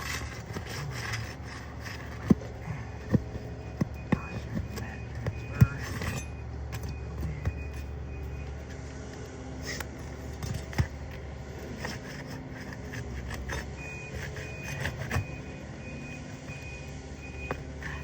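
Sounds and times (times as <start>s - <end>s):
tool knocking on shingles: 0.0s - 7.8s
reversing alarm beeping: 0.0s - 9.0s, 9.6s - 18.0s
low engine hum: 0.0s - 18.0s.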